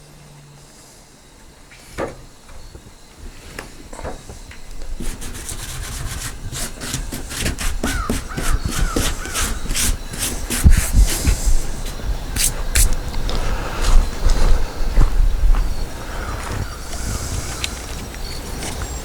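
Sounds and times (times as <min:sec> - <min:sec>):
scraping on wooden slab: 0:04.8 - 0:13.0
knocks on wood: 0:06.9 - 0:11.0.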